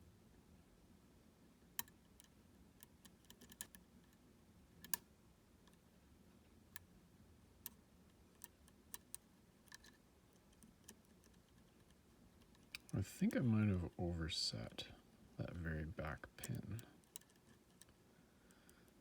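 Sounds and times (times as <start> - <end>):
lock pick metallic clicks: 1.8 - 3.8.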